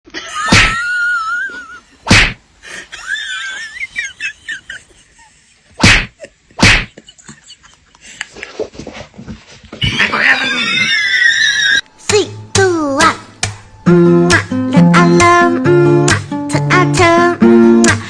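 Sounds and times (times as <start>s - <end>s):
loud slapping whacks: 0.5s - 0.8s, 2.1s - 2.4s, 5.8s - 7.0s
high-pitched squealing cries: 9.9s - 11.8s.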